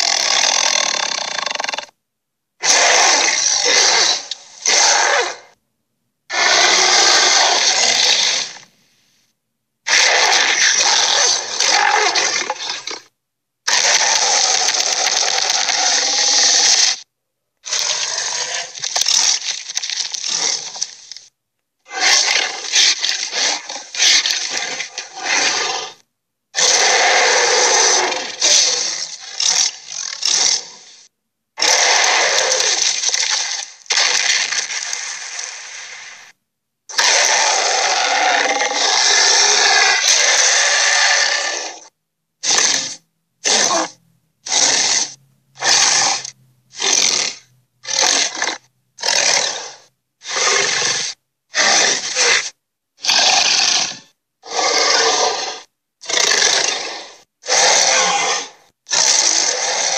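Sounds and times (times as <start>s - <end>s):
creature roars: 0.0s - 1.9s, 2.6s - 5.5s, 6.3s - 8.6s, 9.9s - 13.0s, 13.7s - 17.0s, 26.6s - 30.8s, 31.6s - 36.2s, 36.9s - 59.9s.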